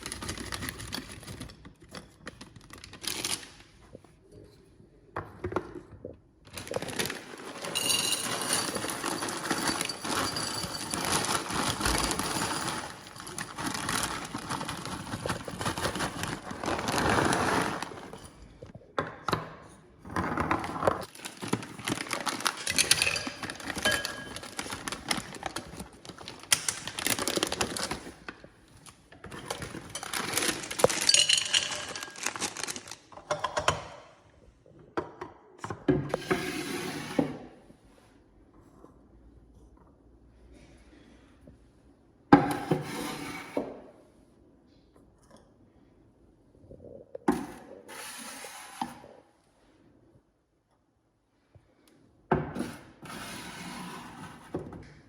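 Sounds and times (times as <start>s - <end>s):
nuts rattling into glass jars: 6.7s - 14.9s, 21.4s - 25.4s, 29.8s - 32.9s.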